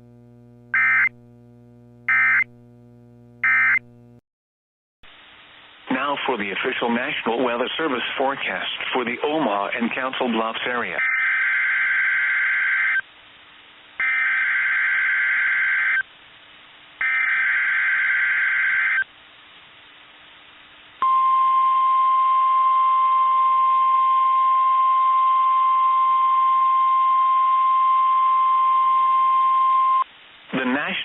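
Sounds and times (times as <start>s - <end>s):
steady single-pitch alarm tone: 0.7s - 1.2s, 2.0s - 2.6s, 3.4s - 4.0s, 11.0s - 13.0s, 14.0s - 16.0s, 17.0s - 19.0s
warbling two-tone data bursts: 0.8s - 1.1s, 3.4s - 3.8s.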